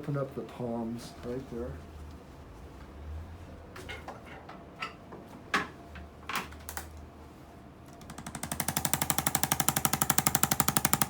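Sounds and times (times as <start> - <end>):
percussion device rapid pulsing: 8.0 - 11.0.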